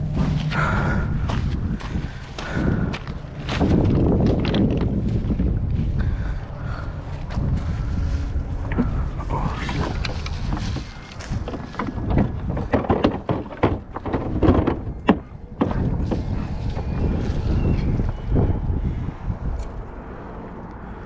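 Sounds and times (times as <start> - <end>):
wind buffeting microphone: 0.0 - 21.0
knocks and clatters: 3.4 - 5.5, 8.6 - 17.4.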